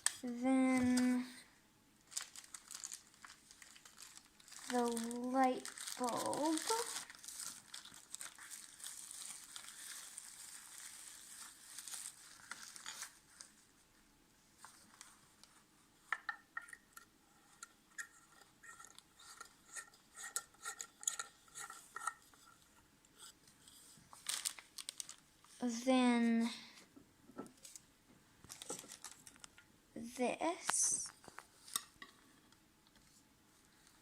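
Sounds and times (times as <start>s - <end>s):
wrapping rustling: 2.0s - 13.8s, 23.7s - 25.9s, 27.6s - 29.6s.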